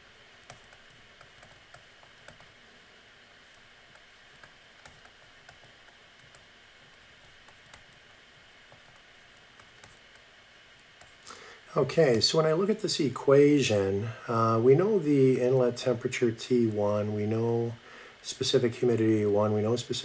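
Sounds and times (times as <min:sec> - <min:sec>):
low steady hiss: 0:00.0 - 0:20.0
typing on computer keyboard: 0:00.4 - 0:02.6, 0:03.5 - 0:11.2.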